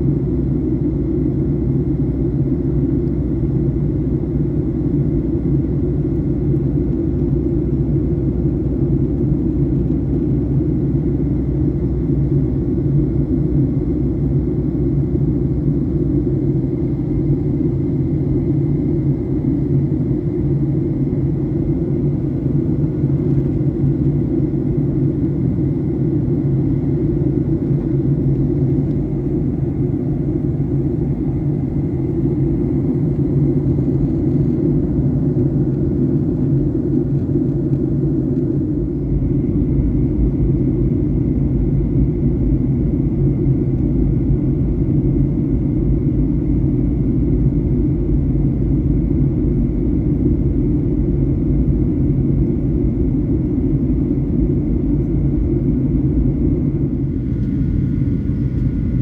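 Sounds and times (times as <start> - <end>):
airplane cabin drone: 0.0 - 59.0
faint high whine: 14.5 - 36.3.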